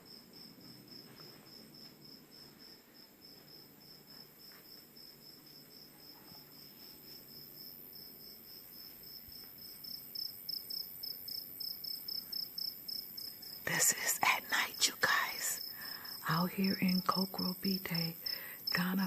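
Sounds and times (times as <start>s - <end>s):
cricket chirping: 0.0s - 19.0s.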